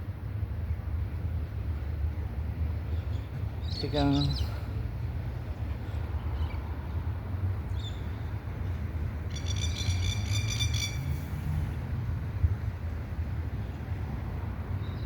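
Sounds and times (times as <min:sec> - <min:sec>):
bird chirping and trilling: 0:09.3 - 0:11.1.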